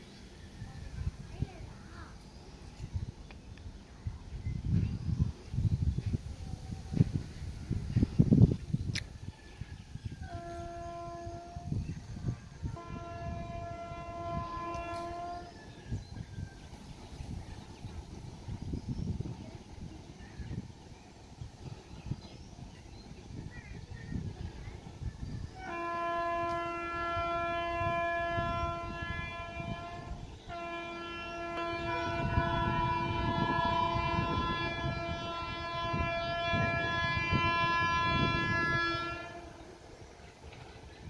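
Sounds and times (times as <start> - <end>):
locomotive horn blast: 10.1 - 16.1, 25.2 - 40.2.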